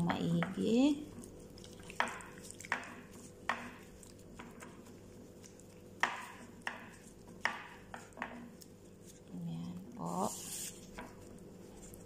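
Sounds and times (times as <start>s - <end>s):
utensil knocking against bowl: 1.9s - 4.7s.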